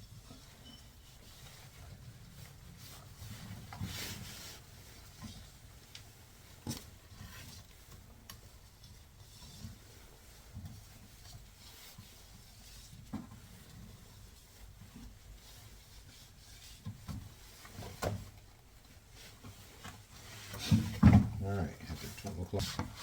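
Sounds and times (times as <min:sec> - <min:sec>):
faint rubbing of rubber: 0:00.0 - 0:23.0.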